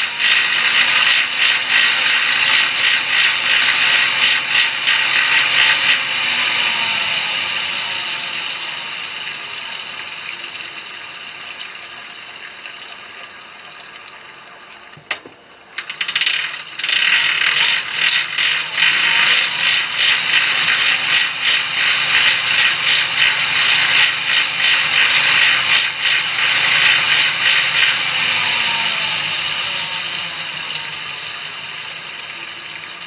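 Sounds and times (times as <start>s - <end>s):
bike drivetrain rattling and clicking: 0.0s - 6.2s, 14.9s - 28.7s
wheel whir: 0.0s - 33.0s.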